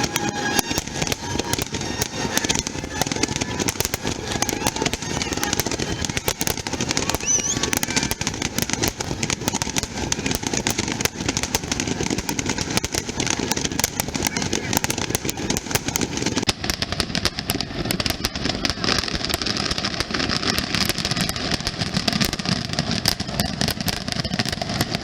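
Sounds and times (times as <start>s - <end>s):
firework rising whistle: 0.0s - 18.2s
crowd voices: 0.0s - 25.0s
fireworks crackling: 0.0s - 25.0s.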